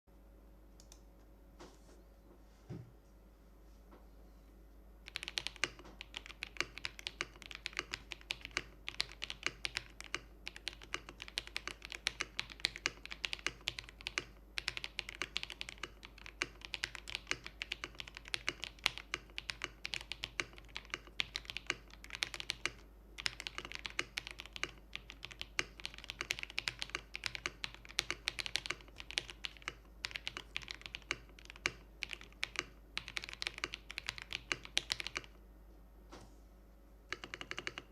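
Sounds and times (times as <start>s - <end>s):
typing on mechanical keyboard: 5.1s - 35.4s, 37.1s - 37.9s.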